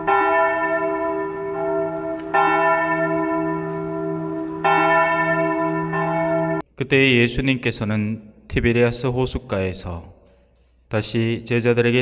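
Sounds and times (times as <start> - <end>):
church bell ringing: 0.0 - 6.7.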